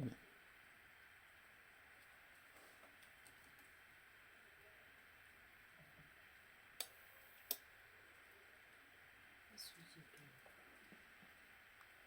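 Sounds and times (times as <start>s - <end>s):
faint steady hiss: 0.0s - 12.0s
sharp clicks: 6.8s - 7.6s.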